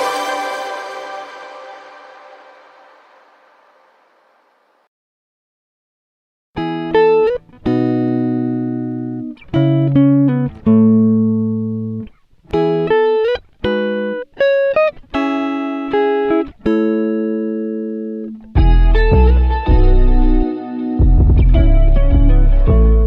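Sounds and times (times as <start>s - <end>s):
slow plucked-string melody: 18.6s - 23.0s.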